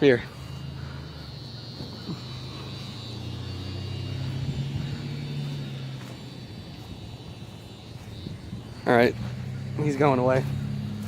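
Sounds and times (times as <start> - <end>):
passing car engine: 0.2 - 11.0.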